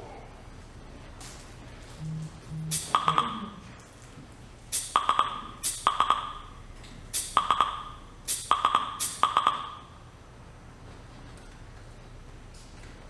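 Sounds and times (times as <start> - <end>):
sharp clicks: 2.1 - 3.8, 4.8 - 6.3, 7.2 - 9.7.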